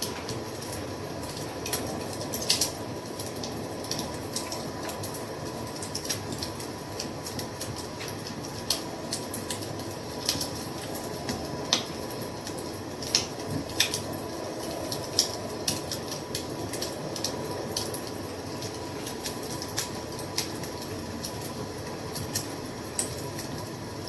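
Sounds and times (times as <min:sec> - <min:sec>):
low rumble of burning fire: 0:00.0 - 0:24.0.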